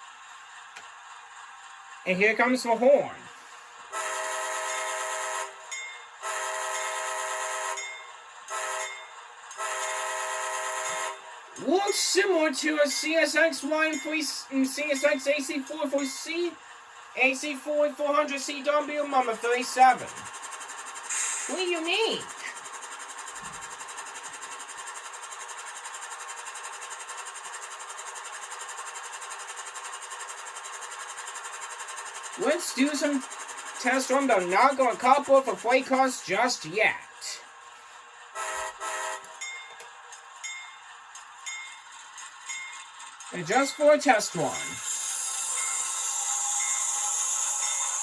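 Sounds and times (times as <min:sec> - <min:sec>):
buzzy diesel engine drone: 0:00.0 - 0:39.4
model locomotive air horn: 0:03.9 - 0:07.8, 0:08.5 - 0:11.3, 0:38.3 - 0:39.3, 0:44.5 - 0:48.0.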